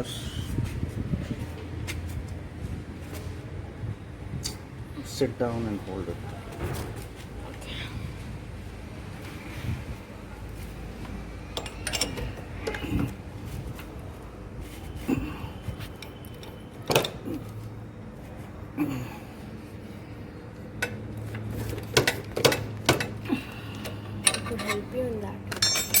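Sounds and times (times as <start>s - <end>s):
metallic clinks and knocks: 11.6s - 12.9s, 24.2s - 26.0s.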